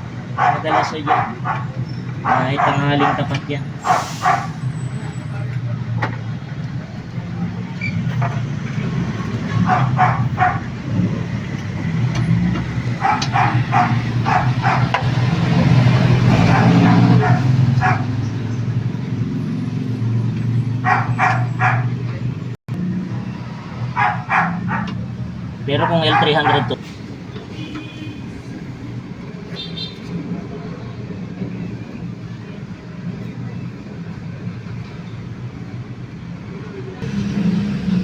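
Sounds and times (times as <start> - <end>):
dog barking: 0.3 - 4.6, 9.5 - 10.8, 12.9 - 15.0, 16.3 - 18.3, 20.8 - 22.0, 23.9 - 25.0, 25.7 - 26.8.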